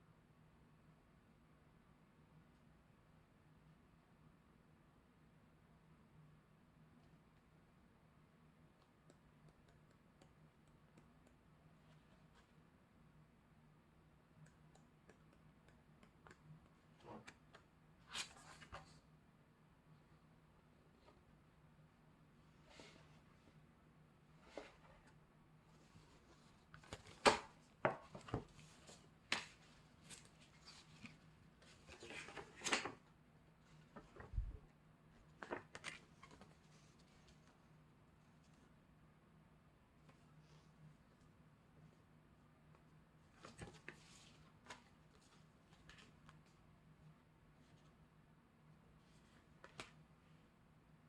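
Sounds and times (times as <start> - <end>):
paper rustling: 26.0 - 33.0.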